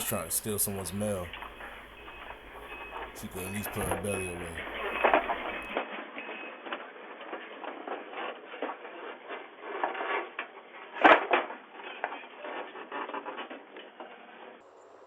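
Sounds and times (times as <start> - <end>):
mail rustling and clicking: 0.0 - 5.8.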